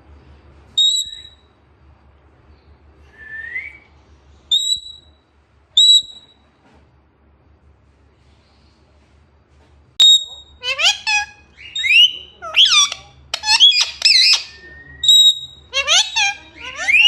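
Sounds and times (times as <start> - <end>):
parrot whistling: 0.8 - 1.4, 4.5 - 5.1, 5.8 - 6.4, 10.0 - 17.0.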